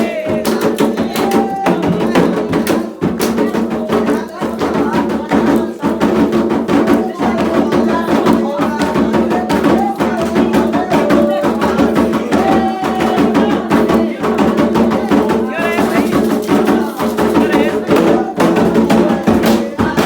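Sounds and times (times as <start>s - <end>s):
hand drums beating: 0.0s - 20.0s
people singing a chant: 0.0s - 20.0s.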